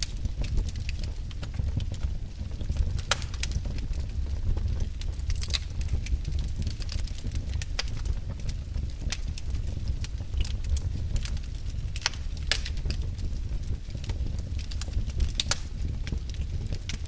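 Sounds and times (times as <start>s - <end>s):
wood fire crackling: 0.0s - 17.0s.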